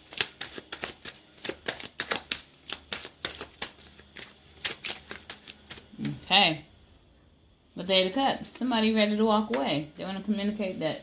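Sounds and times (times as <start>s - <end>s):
cards being shuffled: 0.0s - 6.3s.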